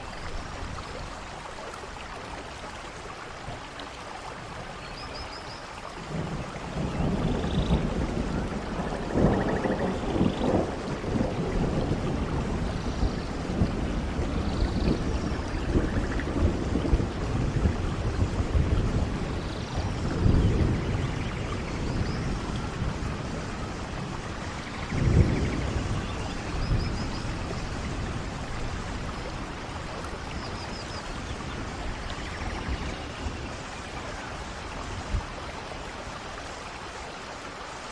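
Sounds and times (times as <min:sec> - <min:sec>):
stream flowing: 0:00.0 - 0:37.9.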